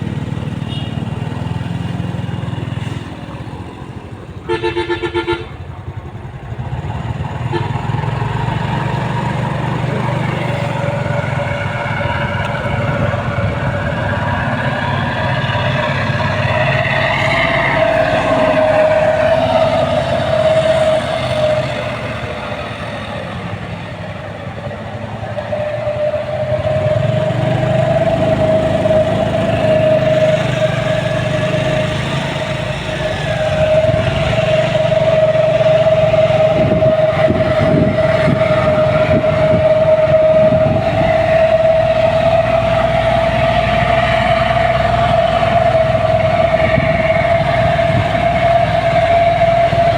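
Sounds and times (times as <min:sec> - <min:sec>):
low engine rumble: 0:00.0 - 0:49.9.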